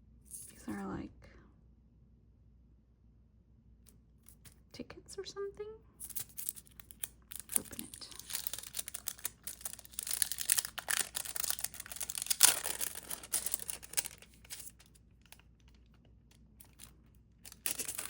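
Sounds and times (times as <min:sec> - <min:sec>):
paper and plastic packaging crinkling: 0:06.1 - 0:18.0.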